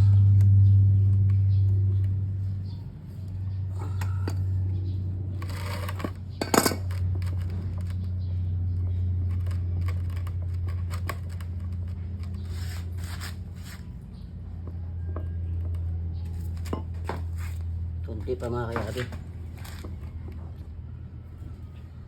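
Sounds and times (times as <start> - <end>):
steady low hum: 0.0 - 22.0
metal tools clinking and tapping: 5.4 - 7.5.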